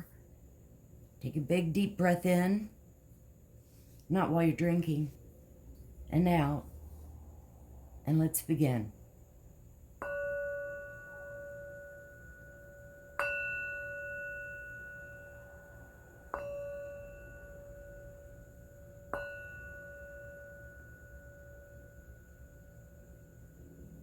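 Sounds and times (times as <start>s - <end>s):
singing bowl ringing: 9.9s - 24.0s.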